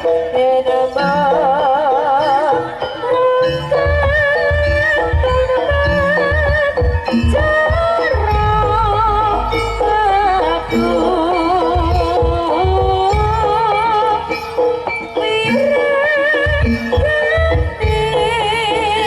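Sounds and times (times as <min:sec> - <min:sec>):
drums: 0:00.0 - 0:19.0
wavering lead melody: 0:00.0 - 0:19.0
low booming tones: 0:03.6 - 0:14.3.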